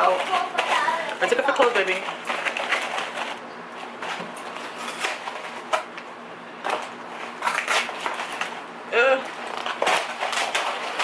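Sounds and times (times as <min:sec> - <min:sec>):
packaging rustling: 0:00.0 - 0:06.0, 0:06.6 - 0:08.7, 0:09.3 - 0:11.0.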